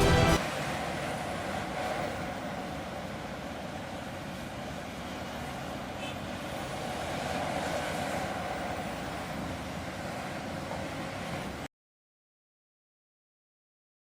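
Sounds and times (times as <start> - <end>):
heavy diesel machinery running: 0.0 - 3.0.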